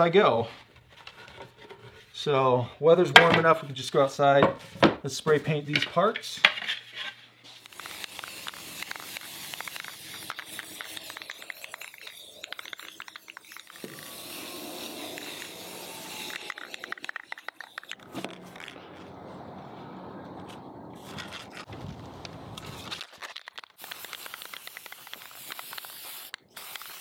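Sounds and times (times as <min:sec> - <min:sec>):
spray can hissing: 0:07.5 - 0:18.6, 0:23.8 - 0:27.0
spray can ball rattling: 0:07.5 - 0:18.7, 0:22.6 - 0:27.0.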